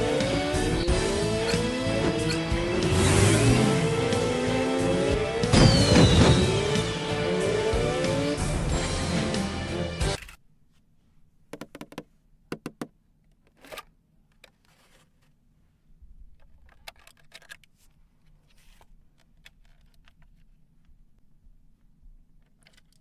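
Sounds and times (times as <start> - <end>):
plastic toys clicking: 10.2 - 10.4, 11.6 - 15.0, 16.3 - 18.0, 18.6 - 20.5, 22.4 - 23.0
soft rustles: 13.3 - 23.0.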